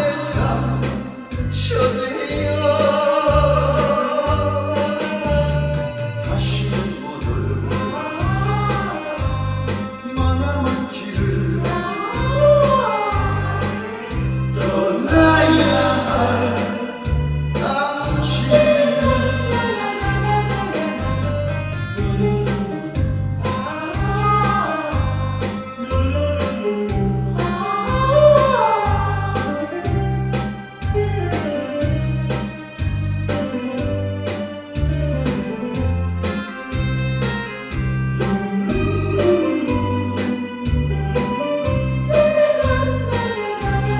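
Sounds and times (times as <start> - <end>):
recorded backing music: 0.0 - 43.9
steady bass beat: 0.0 - 43.9
group of people singing: 10.9 - 21.1, 23.4 - 25.5, 27.4 - 30.0, 38.7 - 41.3, 42.1 - 43.9.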